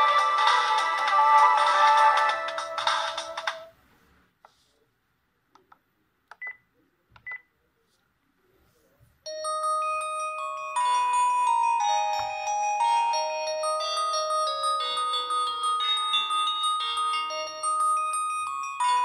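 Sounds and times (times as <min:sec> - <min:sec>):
bright bell-like ringtone melody: 0:00.0 - 0:03.3, 0:09.3 - 0:19.0
phone ringtone: 0:09.3 - 0:19.0.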